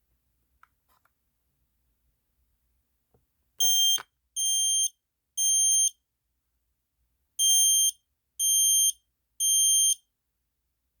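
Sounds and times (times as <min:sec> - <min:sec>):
smoke alarm beeping: 0:03.6 - 0:05.9, 0:07.4 - 0:10.0.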